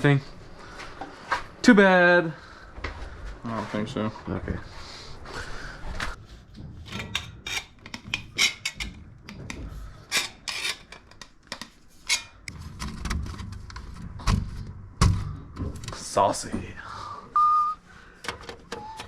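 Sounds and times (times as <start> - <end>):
tools scraping and knocking: 6.0 - 14.6.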